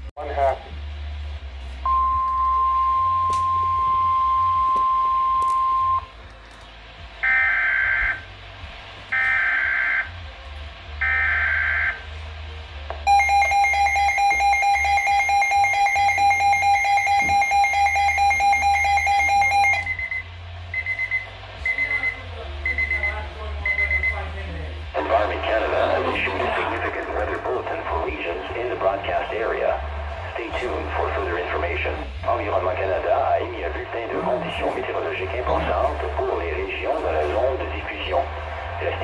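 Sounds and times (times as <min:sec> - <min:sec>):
loud pulsing alarm tone: 0:07.2 - 0:08.3, 0:09.1 - 0:10.3, 0:11.0 - 0:12.1, 0:13.1 - 0:24.2.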